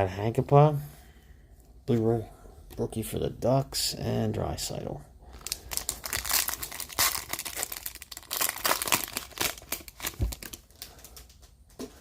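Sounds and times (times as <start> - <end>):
foil wrapper crinkling and tearing: 5.4 - 11.3.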